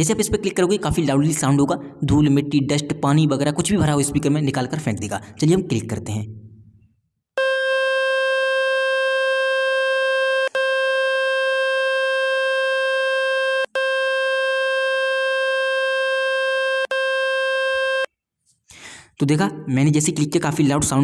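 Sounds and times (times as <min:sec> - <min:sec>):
buzzy electronic tone: 0:07.4 - 0:18.1.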